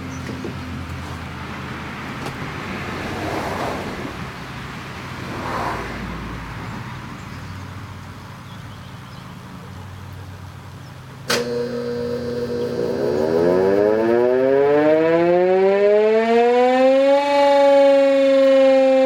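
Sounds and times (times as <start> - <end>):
vehicles passing: 0.0 - 19.0.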